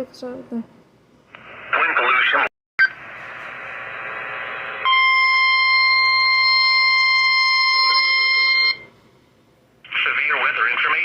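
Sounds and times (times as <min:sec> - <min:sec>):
radio hiss: 0:01.3 - 0:04.8, 0:09.8 - 0:11.0
steady warning alarm tone: 0:04.8 - 0:08.9.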